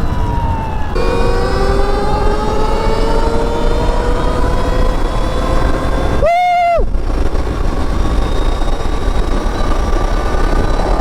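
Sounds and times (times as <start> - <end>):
electric motor whine: 0.0 - 6.2
wind noise on microphone: 0.0 - 11.0
loud tone: 1.0 - 6.9.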